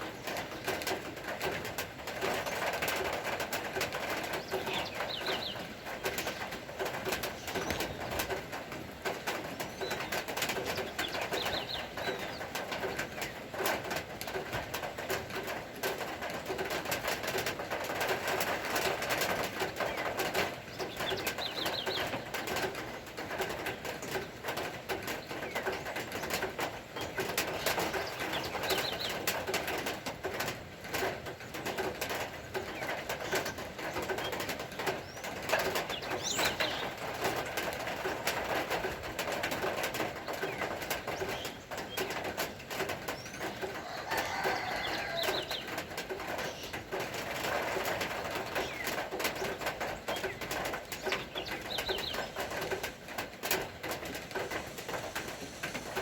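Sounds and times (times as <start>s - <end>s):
rain patter: 0.0s - 56.0s
birds chirping: 3.9s - 8.4s, 9.3s - 13.4s, 19.0s - 23.0s, 25.2s - 29.3s, 32.4s - 37.8s, 40.2s - 42.3s, 43.0s - 56.0s.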